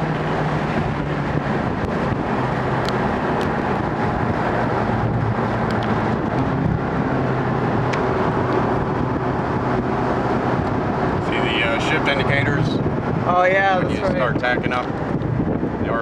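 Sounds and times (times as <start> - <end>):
car engine humming: 0.0 - 16.0
road noise: 0.0 - 16.0.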